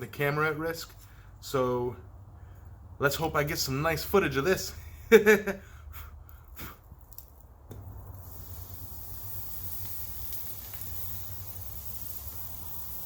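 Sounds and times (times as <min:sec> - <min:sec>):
forge hissing: 0:08.0 - 0:13.0.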